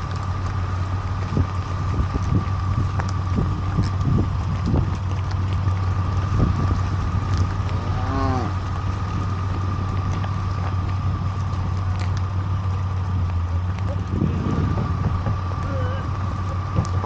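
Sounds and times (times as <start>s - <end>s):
engine humming: 0.0s - 17.0s
cow mooing: 7.7s - 8.7s.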